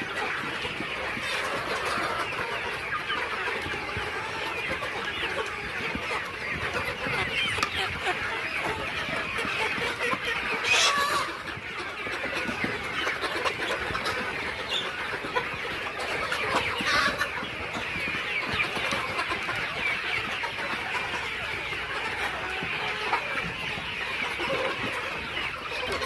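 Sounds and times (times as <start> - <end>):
chickens clucking and chirping: 0.0 - 26.0.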